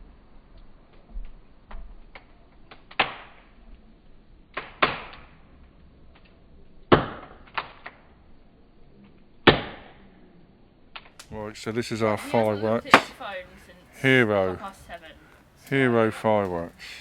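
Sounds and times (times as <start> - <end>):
faint small crackles: 0.0 - 11.5
fireworks bangs echoing: 11.3 - 17.0.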